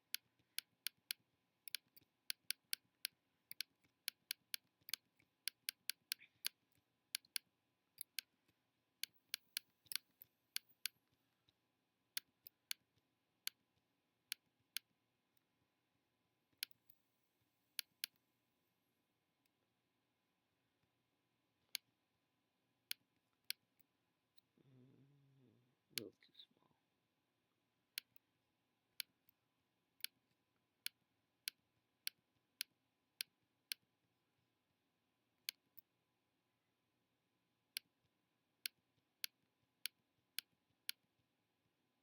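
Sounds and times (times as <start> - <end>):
computer mouse clicking: 0.1 - 8.3.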